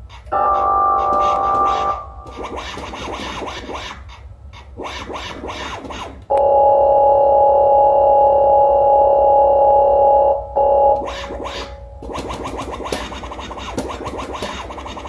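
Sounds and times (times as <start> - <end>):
synthesizer music: 0.3 - 2.4.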